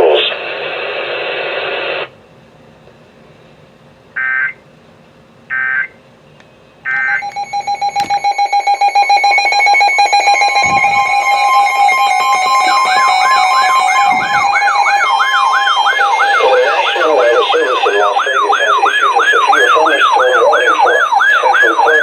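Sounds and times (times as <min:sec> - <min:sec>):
electronic data bursts: 0:06.9 - 0:22.0
electronic alert attention tone: 0:07.0 - 0:20.4.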